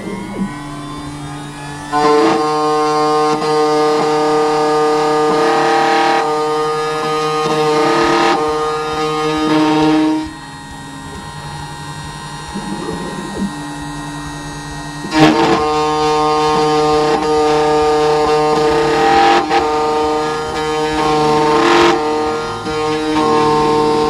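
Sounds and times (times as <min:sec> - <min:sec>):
plucked string instrument music: 0:00.0 - 0:24.0.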